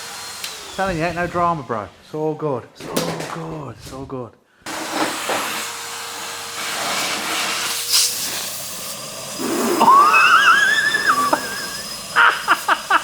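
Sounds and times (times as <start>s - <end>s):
vacuum cleaner running: 0.0s - 4.0s, 4.6s - 13.0s
high wavering whistle: 9.4s - 12.2s.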